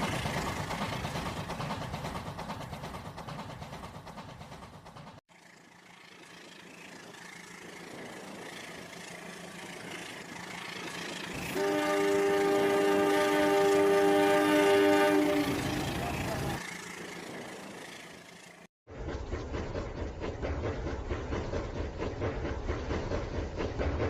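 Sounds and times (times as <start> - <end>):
fast rhythmic train rumble: 0.0 - 24.0
train approaching: 0.0 - 24.0
train horn chord: 11.4 - 16.5.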